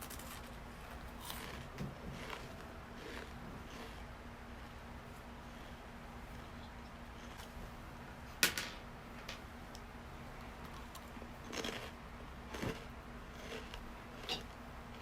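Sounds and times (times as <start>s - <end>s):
rice crackers crunching: 0.0s - 4.0s, 10.6s - 15.0s.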